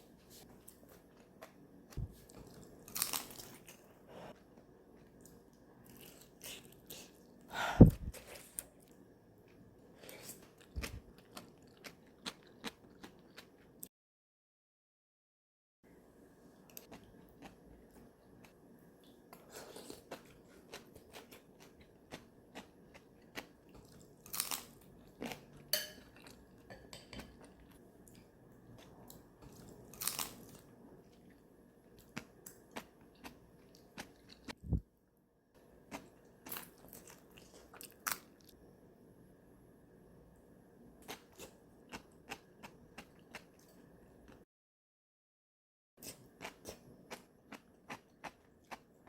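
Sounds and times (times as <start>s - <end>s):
person chewing crunchy food: 10.0s - 13.7s, 19.4s - 26.6s, 27.2s - 31.4s, 32.0s - 34.8s, 35.9s - 38.6s, 41.0s - 44.4s, 46.0s - 49.0s.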